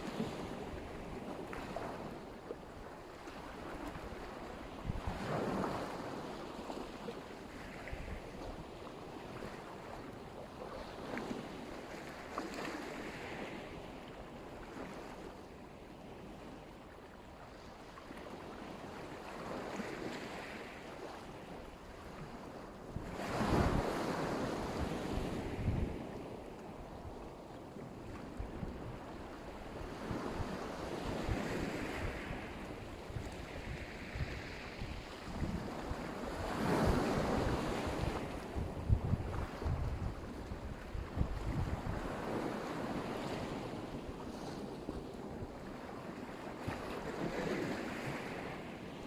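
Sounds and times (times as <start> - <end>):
waves breaking on shore: 0.0 - 49.0
wind buffeting microphone: 23.0 - 27.2, 29.8 - 45.6.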